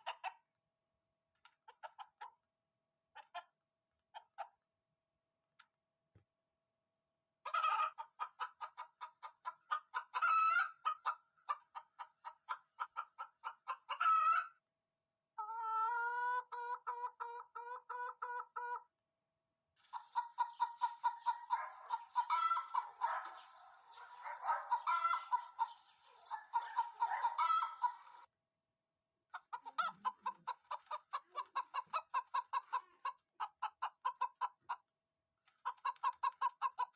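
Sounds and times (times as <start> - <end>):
hen clucking: 0.0 - 0.4, 1.4 - 2.4, 3.2 - 3.5, 7.4 - 14.6, 15.4 - 18.9, 19.8 - 28.3, 29.3 - 34.8, 35.6 - 36.9.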